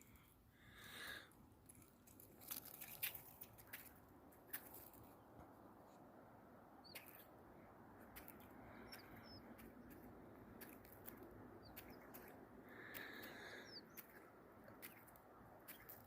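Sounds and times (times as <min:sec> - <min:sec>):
faint birds chirping: 0:03.6 - 0:16.0
soft scattered clicks: 0:08.0 - 0:16.0.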